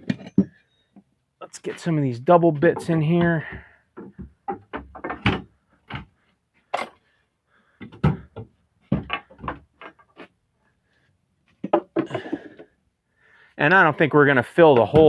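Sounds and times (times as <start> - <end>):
axes knocking on wooden slats: 2.6 - 6.1, 7.8 - 10.0, 11.6 - 12.6.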